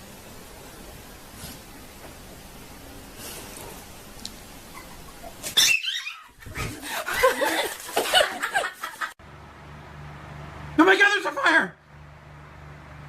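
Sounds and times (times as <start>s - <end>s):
background hiss: 0.0s - 9.2s
animal short cries: 5.5s - 6.3s.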